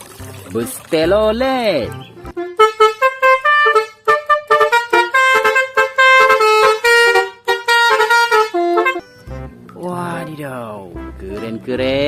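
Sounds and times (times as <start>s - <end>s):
multi-tone bus horn melody: 2.2s - 11.7s.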